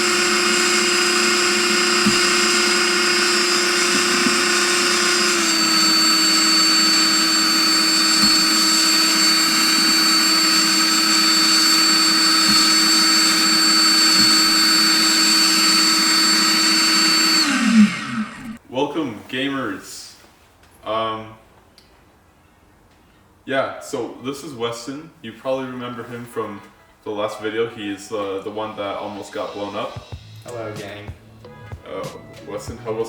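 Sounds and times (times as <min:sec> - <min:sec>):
high motor whine: 0:00.0 - 0:18.6.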